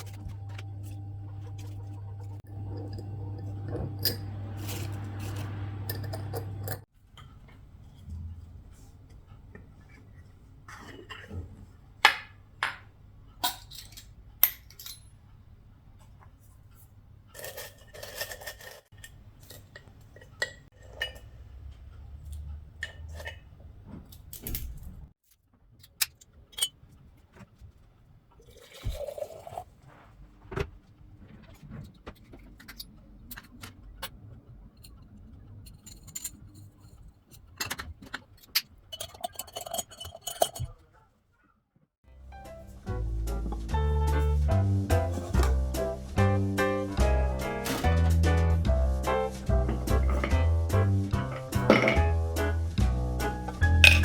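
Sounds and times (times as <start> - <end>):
small hard objects clinking: 53.5 - 54.0.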